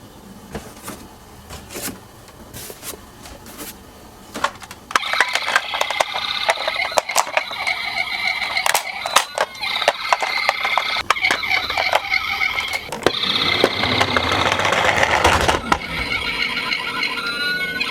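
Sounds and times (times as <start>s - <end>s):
toys being handled: 0.5s - 16.5s
toy rolling with plastic rattles: 4.4s - 16.3s
toy electronic siren: 4.9s - 17.9s.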